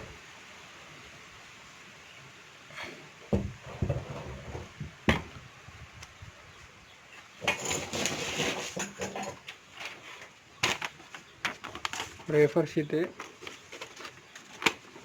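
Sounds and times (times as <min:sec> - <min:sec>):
scraping and rustling: 0:03.4 - 0:05.0, 0:07.4 - 0:15.0.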